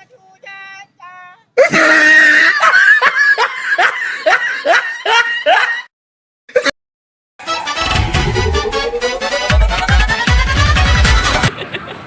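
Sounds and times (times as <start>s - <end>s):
person crying out: 1.6s - 2.8s
loud laughter: 1.6s - 5.9s, 11.2s - 12.0s.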